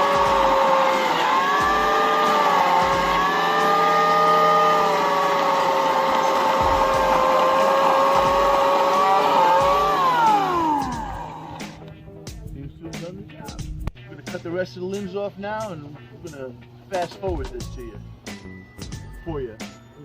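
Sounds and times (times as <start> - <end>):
electric chainsaw cutting wood: 0.0 - 11.9.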